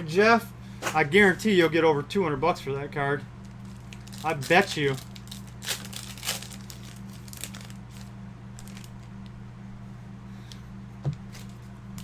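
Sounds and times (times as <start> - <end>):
low electrical hum: 0.0 - 12.0
trading cards crinkling: 3.4 - 9.3.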